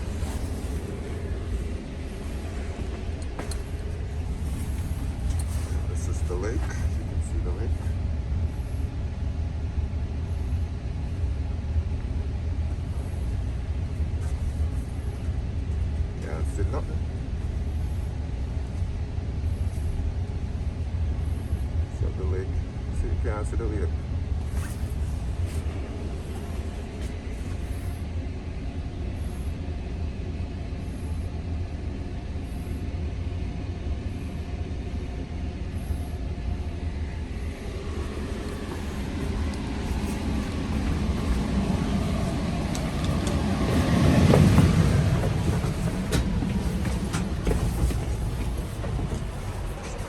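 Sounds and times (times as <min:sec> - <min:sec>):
train running past: 0:00.0 - 0:18.0, 0:34.0 - 0:50.0.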